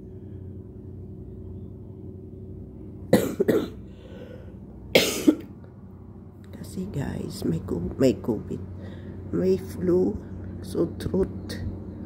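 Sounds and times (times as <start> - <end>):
person coughing: 3.1 - 3.8, 5.0 - 5.5.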